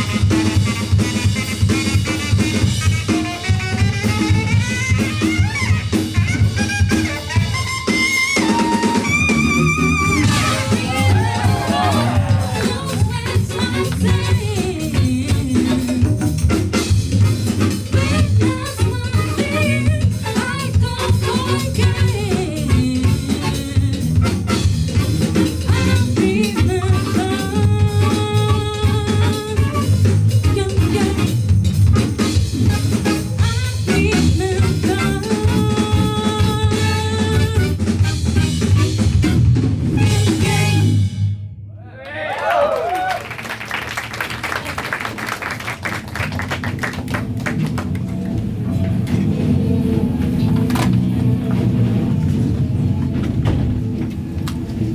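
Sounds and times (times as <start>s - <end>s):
drum kit: 0.0s - 41.5s, 42.9s - 54.9s
bass: 0.0s - 54.9s
keyboards: 45.6s - 54.9s.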